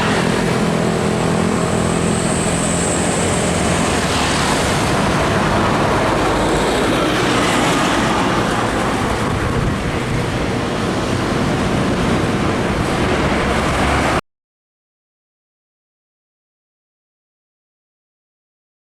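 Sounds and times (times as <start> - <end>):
heavy trucks passing: 0.0 - 14.2.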